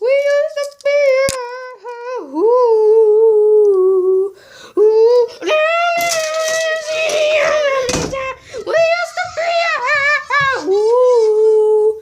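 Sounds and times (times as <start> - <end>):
child humming a tune: 1.4 - 12.0.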